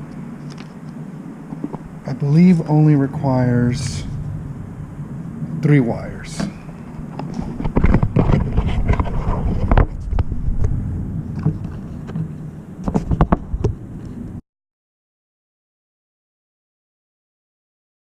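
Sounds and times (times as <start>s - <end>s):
low rumble: 0.0s - 14.4s.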